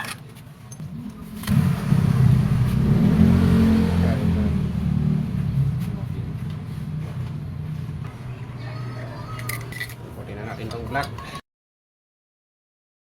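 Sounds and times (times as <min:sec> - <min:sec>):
vehicle engine revving: 0:01.2 - 0:08.6.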